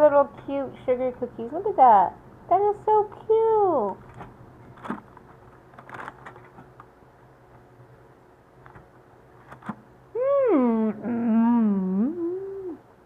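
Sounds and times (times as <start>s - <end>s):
cookie handling clicks and rustles: 3.9s - 6.9s.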